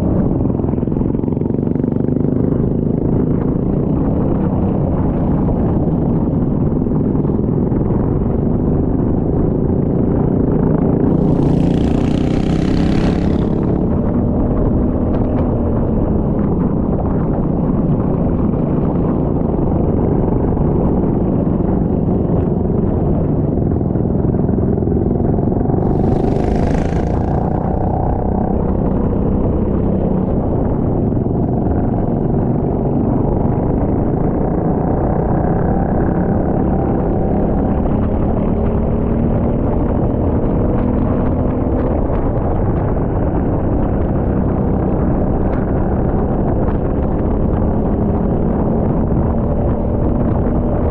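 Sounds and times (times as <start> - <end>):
wind and road noise: 0.0 - 50.9
kart engine revving: 10.8 - 15.1, 25.2 - 30.2.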